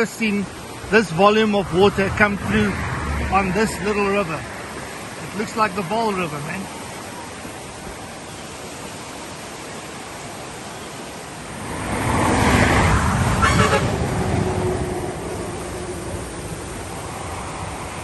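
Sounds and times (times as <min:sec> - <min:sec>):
flooded river rushing: 0:00.0 - 0:18.0
vehicle passing: 0:00.7 - 0:05.5, 0:11.5 - 0:18.0.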